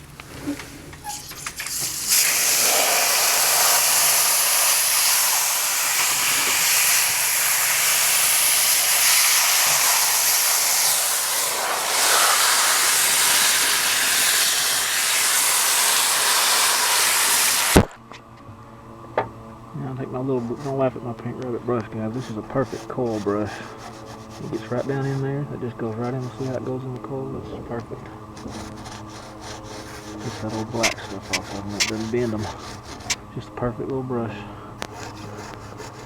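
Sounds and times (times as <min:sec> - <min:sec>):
water spraying from hose: 0:01.0 - 0:17.8, 0:28.5 - 0:33.2.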